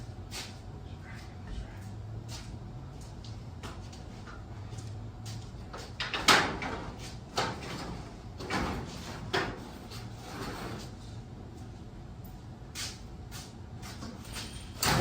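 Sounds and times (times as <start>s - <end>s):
garage door metal clanks: 14.1s - 15.0s.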